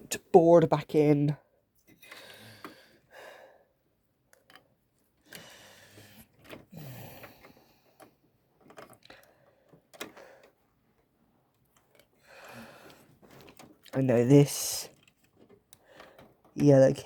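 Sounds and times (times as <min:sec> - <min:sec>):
plastic parts and cables handled: 0:07.3 - 0:17.0.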